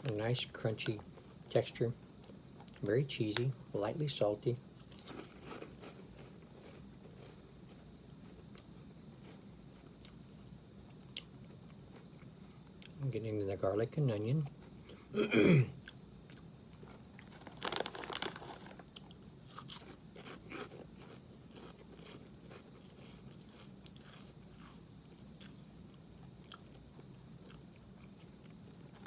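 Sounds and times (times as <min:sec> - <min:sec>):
person crunching snack: 0:04.9 - 0:07.4, 0:16.8 - 0:24.8.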